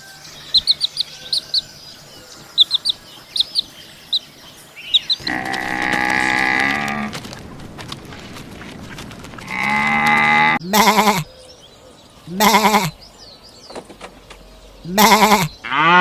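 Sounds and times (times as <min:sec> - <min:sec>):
bird chirping: 0:00.0 - 0:16.0
cow mooing: 0:05.2 - 0:07.2, 0:09.5 - 0:11.3, 0:14.9 - 0:16.0.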